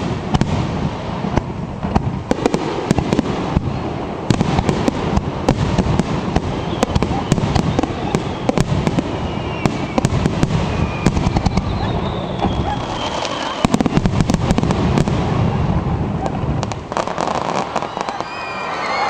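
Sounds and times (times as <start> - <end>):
continuous fireworks rumble: 0.0 - 18.8
fireworks bangs and crackles: 0.0 - 19.0
falling whistles: 6.5 - 14.1, 17.3 - 19.0.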